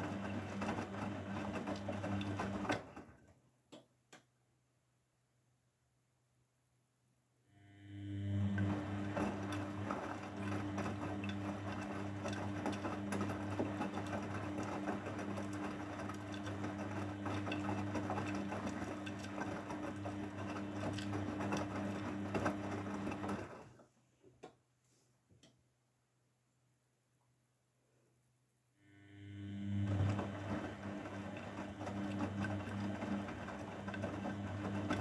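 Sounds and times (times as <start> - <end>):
washing machine motor humming: 0.0 - 3.3, 7.5 - 23.8, 28.8 - 35.0.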